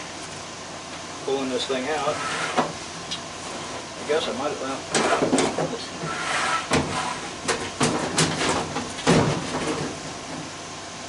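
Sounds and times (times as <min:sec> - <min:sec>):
sheet metal clanking and scraping: 0:04.9 - 0:10.0.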